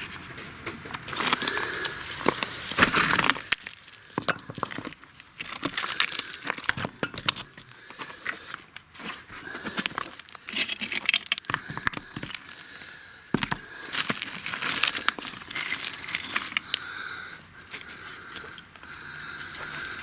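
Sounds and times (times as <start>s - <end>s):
concrete rubble crunching: 0.1s - 20.0s.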